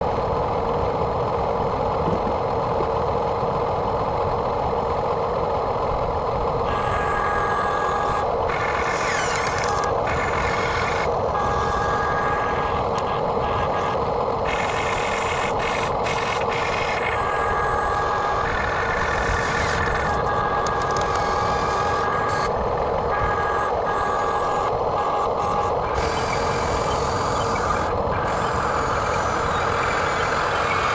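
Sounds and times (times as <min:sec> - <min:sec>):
toy excavator mechanical drone: 0:04.4 - 0:30.9
high whining tones: 0:06.6 - 0:30.9.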